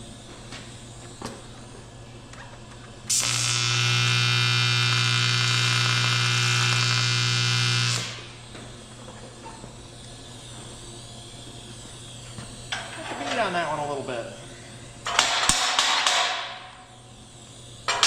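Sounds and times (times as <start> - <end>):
welding arc buzzing: 3.0 - 9.3, 12.3 - 18.0.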